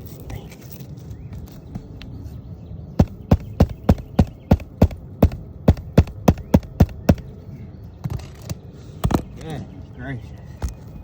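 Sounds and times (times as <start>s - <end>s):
hammer striking a nail: 3.0s - 7.2s.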